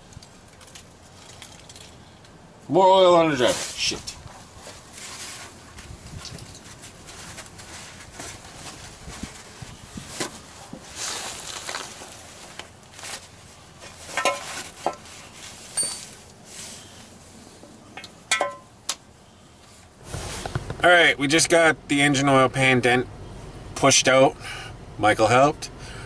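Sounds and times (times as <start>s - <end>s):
metal tools knocking on parts: 14.1s - 15.0s, 18.0s - 18.7s.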